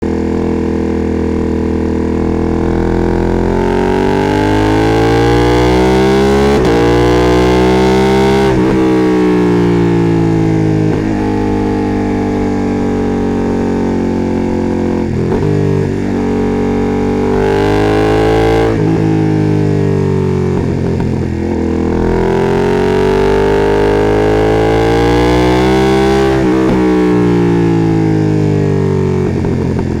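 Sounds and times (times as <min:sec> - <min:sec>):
motorcycle engine revving: 0:00.0 - 0:30.0.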